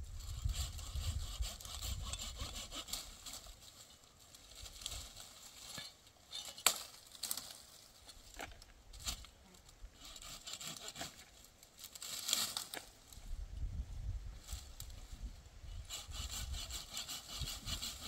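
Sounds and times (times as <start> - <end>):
dry stalks rustling: 0.0 - 18.0
stalks snapping: 6.5 - 7.6, 11.8 - 13.0.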